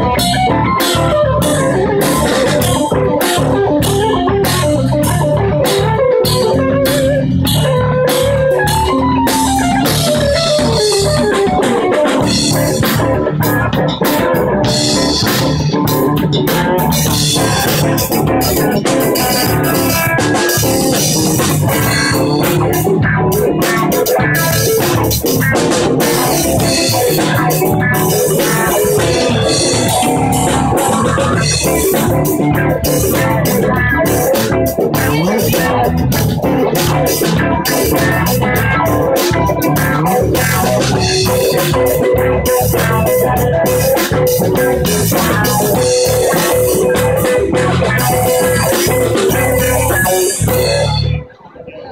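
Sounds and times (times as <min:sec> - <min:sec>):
live band playing loud jam: 0:00.0 - 0:51.9
sliding lead line: 0:26.0 - 0:32.5.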